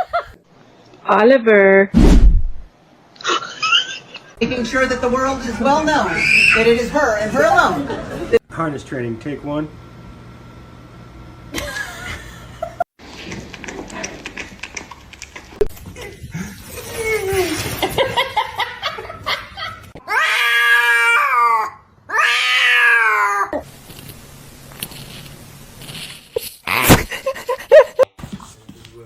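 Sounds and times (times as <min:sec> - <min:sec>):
cat meowing and yowling: 0:20.1 - 0:23.6.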